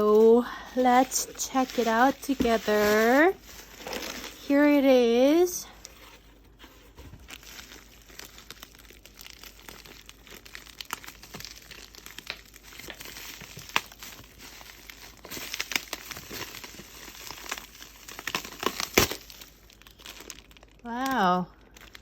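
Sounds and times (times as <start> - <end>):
plastic packaging crinkling: 0.0 - 22.0.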